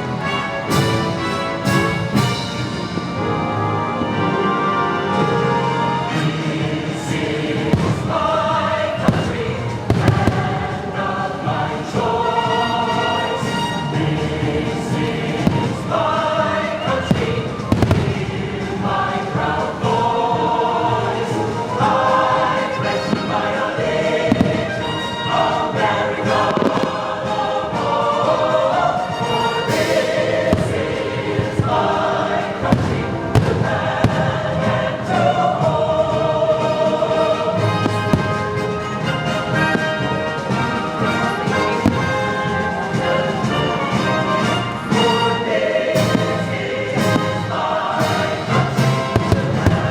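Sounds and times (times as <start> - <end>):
choir singing over music: 0.0 - 49.9
fireworks bangs: 7.1 - 14.1, 14.7 - 20.0, 22.5 - 27.4, 29.0 - 35.3, 37.2 - 49.9.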